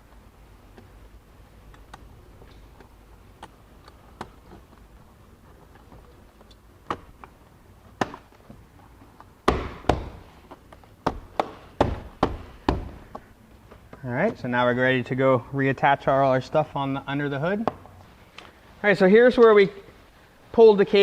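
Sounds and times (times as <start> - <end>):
sharp knocks on plastic: 9.4 - 10.2.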